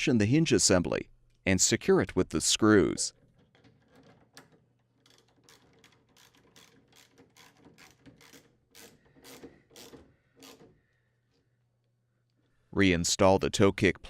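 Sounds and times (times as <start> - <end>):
ratchet wrench clicking: 5.0 - 10.7.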